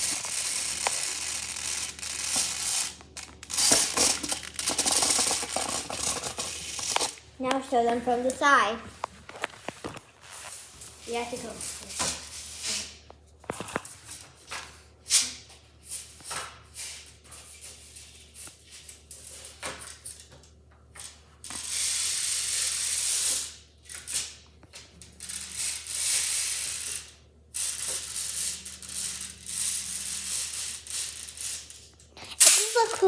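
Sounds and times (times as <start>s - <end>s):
plastic toys clicking and knocking: 0.0s - 10.0s, 27.7s - 33.0s
plastic toys rattling: 0.0s - 12.3s, 25.2s - 33.0s.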